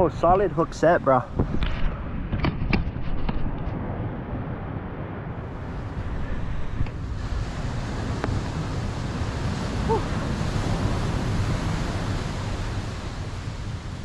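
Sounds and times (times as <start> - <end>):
wind buffeting microphone: 0.0 - 14.0
ocean surf washing: 3.8 - 14.0.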